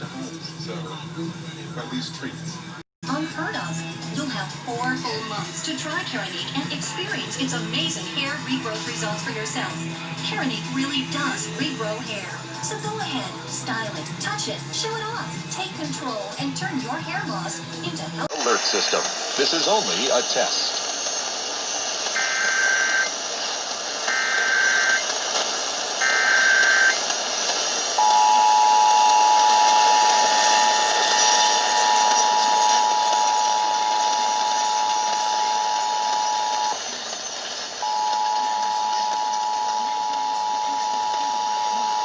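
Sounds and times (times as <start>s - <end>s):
broadcast hiss: 17.1s - 42.0s
screeching data bursts: 22.1s - 23.2s, 24.1s - 25.1s, 26.0s - 27.0s
two-tone attention signal: 28.0s - 36.8s, 37.8s - 42.0s.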